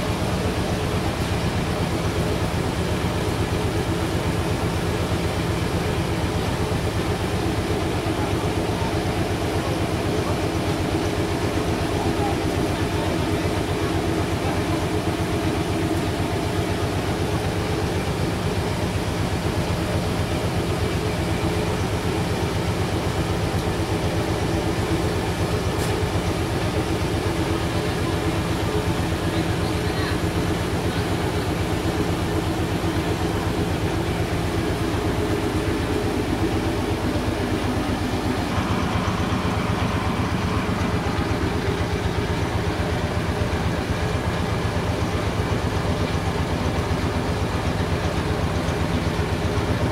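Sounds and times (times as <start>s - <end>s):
engine throbbing: 20.3s - 49.9s.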